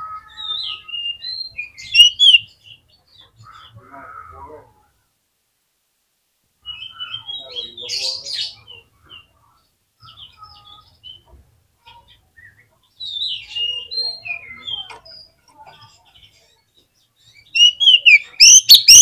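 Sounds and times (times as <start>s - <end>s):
songbird singing whistles and chatter: 0.0s - 2.8s, 12.4s - 15.4s, 17.2s - 19.0s.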